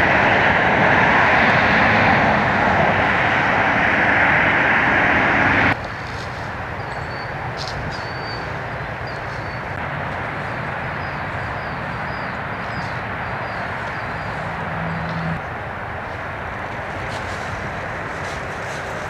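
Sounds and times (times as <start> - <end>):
loud rushing noise: 0.0 - 5.8
outdoor background noise: 0.0 - 19.0.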